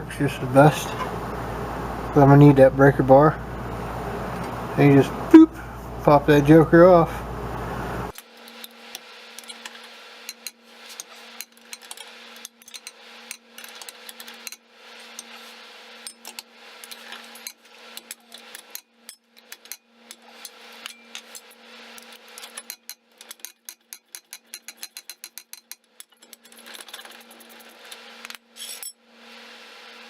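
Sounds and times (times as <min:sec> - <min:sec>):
steady low hum: 0:00.0 - 0:22.9
metal tools clinking: 0:28.6 - 0:29.0.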